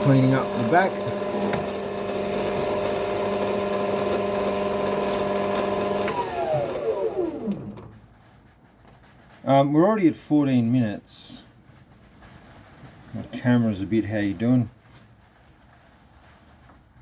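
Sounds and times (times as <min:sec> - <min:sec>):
metal lathe running: 0:00.0 - 0:07.7
lathe spindle winding down: 0:00.0 - 0:07.9.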